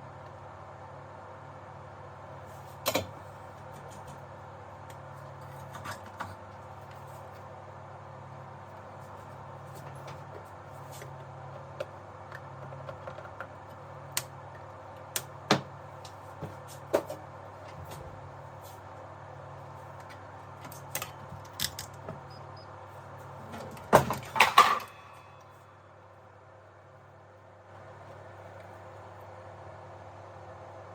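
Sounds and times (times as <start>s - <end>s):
steady low hum: 0.0s - 30.9s
clatter of parts: 23.5s - 25.0s.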